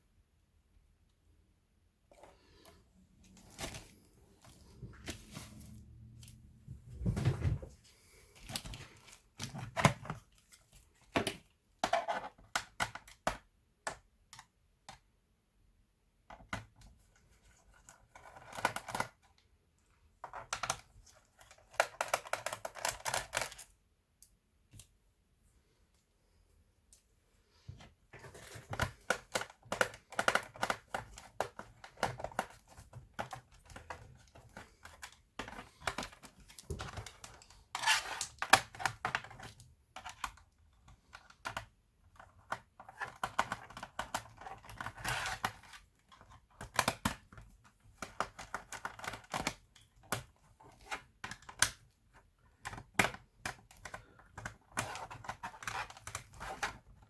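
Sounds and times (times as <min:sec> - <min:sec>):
clicks and plastic rattles on laptop: 0:16.2 - 0:19.4, 0:20.2 - 0:23.7, 0:28.1 - 0:57.0.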